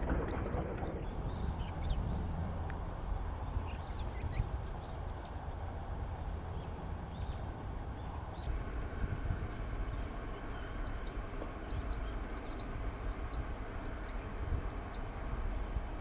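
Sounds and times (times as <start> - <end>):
reed warbler singing: 3.3 - 5.4, 9.3 - 15.4.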